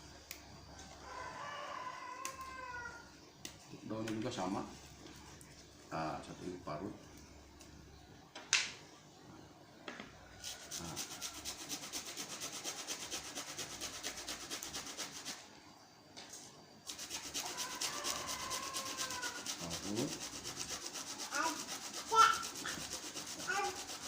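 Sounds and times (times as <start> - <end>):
leaves scraping on a grater: 10.4 - 15.4, 16.9 - 24.0.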